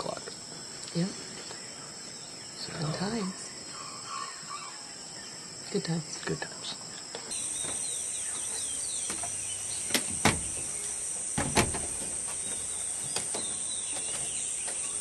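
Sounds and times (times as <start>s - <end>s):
high-pitched insect drone: 0.0s - 15.0s
bird chirps: 7.3s - 15.0s
sharp knocks: 9.0s - 14.8s.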